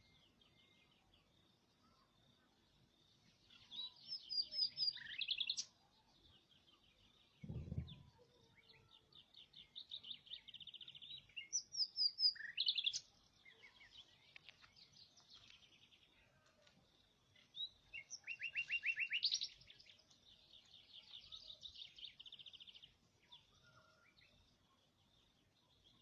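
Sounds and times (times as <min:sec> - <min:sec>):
songbird trilling and chirping: 0:00.0 - 0:26.0.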